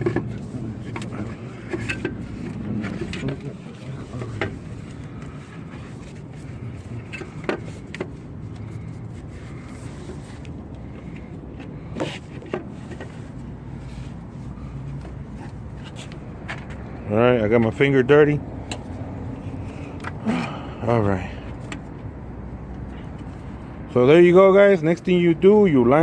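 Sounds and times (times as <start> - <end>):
steady low hum: 0.0 - 17.2.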